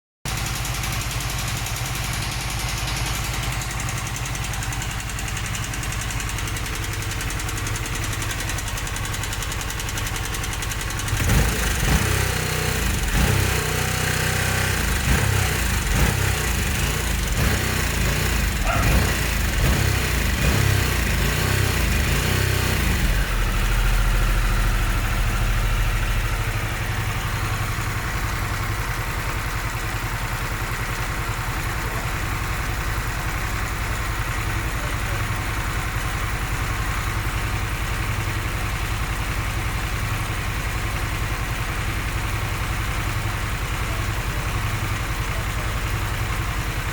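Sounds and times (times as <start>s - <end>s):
engine ticking and knocking: 0.3s - 46.9s
motorcycle engine idling: 0.3s - 46.9s.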